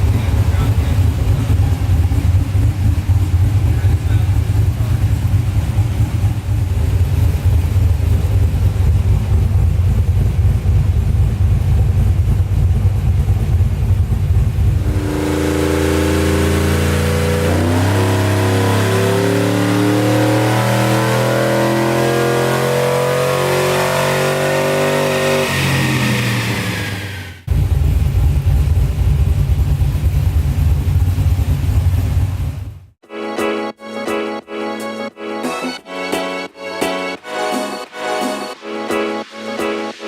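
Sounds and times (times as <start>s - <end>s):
engine rumbling unevenly: 0.0s - 22.6s, 25.6s - 33.0s
stepped sustained tones: 14.5s - 27.5s.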